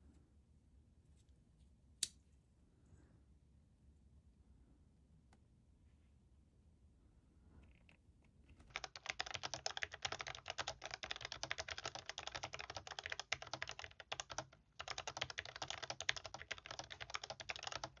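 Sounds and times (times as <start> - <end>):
fast typing on mechanical keyboard: 8.6 - 18.0.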